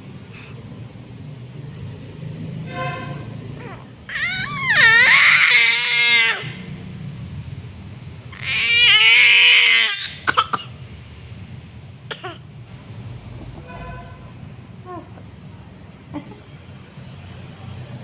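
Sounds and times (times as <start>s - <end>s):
child screaming: 4.1s - 6.5s
child coughing: 10.2s - 10.8s, 12.1s - 12.4s.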